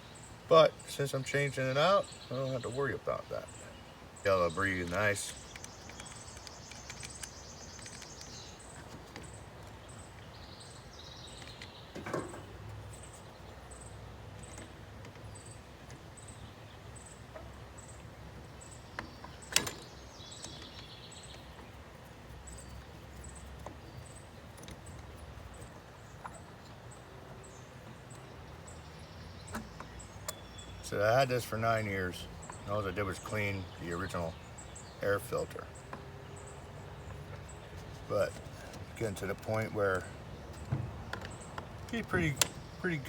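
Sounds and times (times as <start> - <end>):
sharp clicks: 4.8 - 8.5.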